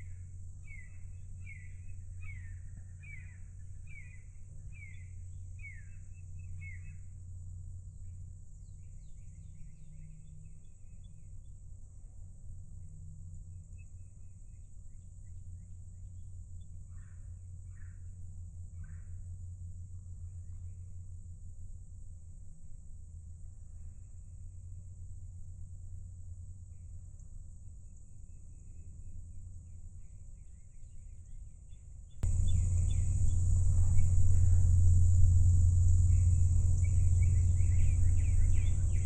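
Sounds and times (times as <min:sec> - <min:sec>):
songbirds singing: 0:00.6 - 0:07.1, 0:30.4 - 0:39.0
high hiss: 0:32.2 - 0:39.0
low hum: 0:32.2 - 0:39.0.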